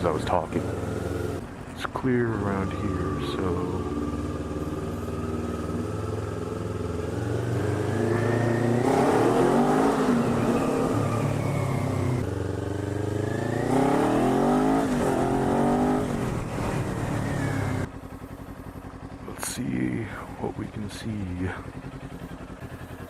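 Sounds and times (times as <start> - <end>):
motorcycle engine accelerating: 0.0 - 23.0.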